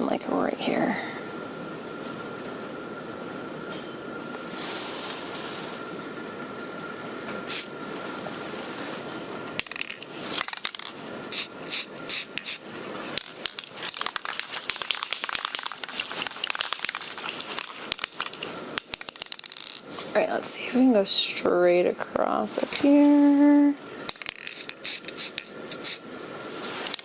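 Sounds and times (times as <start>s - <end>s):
spray paint can hissing: 7.5s - 7.7s, 9.7s - 12.6s, 13.8s - 18.5s, 24.2s - 26.0s
rapid clicking and rattling: 13.2s - 19.8s.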